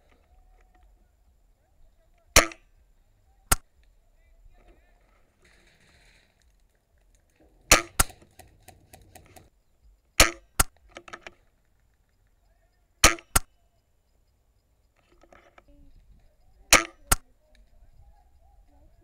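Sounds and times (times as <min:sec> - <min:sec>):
airsoft gun cracks: 0:02.4 - 0:02.7, 0:05.4 - 0:09.5, 0:10.2 - 0:11.4, 0:13.0 - 0:13.5, 0:16.7 - 0:17.2.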